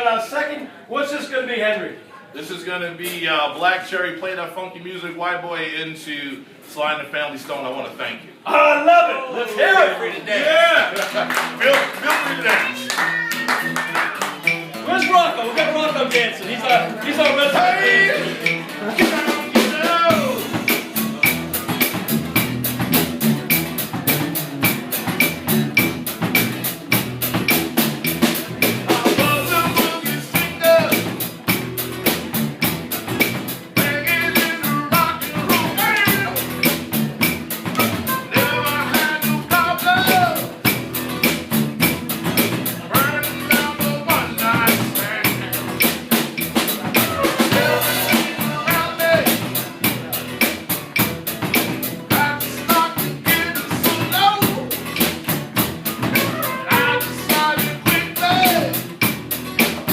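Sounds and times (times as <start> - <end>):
live band playing: 9.5 - 59.9
drum kit beat: 10.8 - 59.9
voice or lead line: 38.1 - 39.8, 47.0 - 49.4, 56.1 - 58.7.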